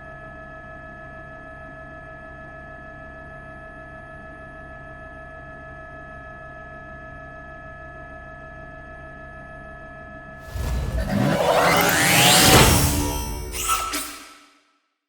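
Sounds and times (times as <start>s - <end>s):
low hum: 10.5s - 14.4s
steady electronic tone: 10.5s - 14.4s.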